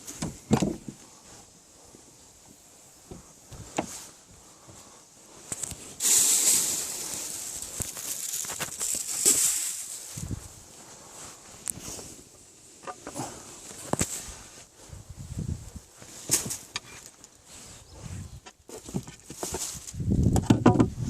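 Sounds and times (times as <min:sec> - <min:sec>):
rustling hissing noise: 0:00.0 - 0:21.0.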